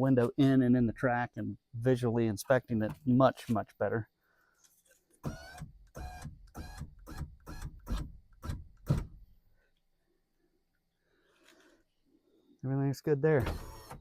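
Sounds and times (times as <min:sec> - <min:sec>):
power window motor: 0:13.4 - 0:14.0.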